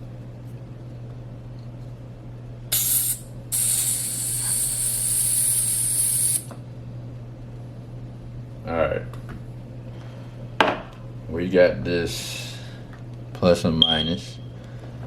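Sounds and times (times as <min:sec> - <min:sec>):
gas hissing into lighter: 0:02.7 - 0:06.5.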